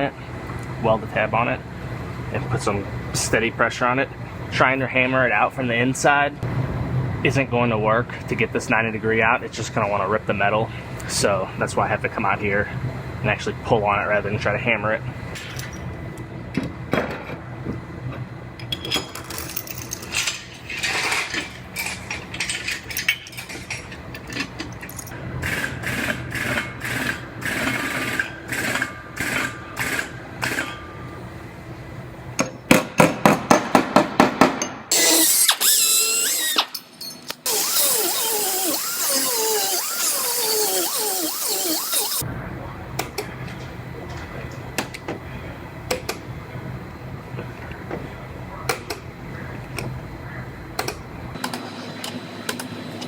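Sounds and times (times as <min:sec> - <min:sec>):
power tool running: 0:34.9 - 0:36.8, 0:37.4 - 0:42.2.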